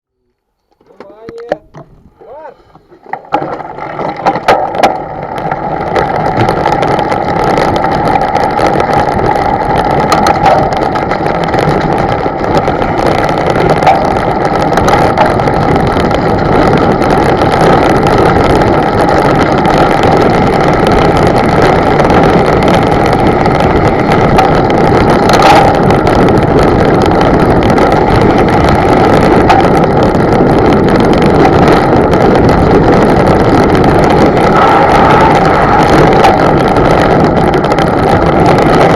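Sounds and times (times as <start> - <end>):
wind noise: 0.2 - 38.9
boat motor running: 2.7 - 38.9
rushing water: 2.8 - 15.4.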